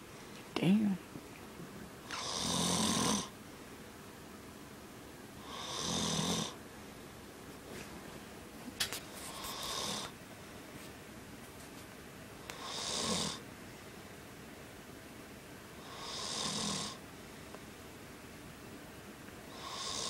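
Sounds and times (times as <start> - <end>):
man snoring: 2.1 - 3.3, 5.4 - 6.6, 9.3 - 10.1, 12.5 - 13.4, 15.8 - 17.0, 19.5 - 20.0.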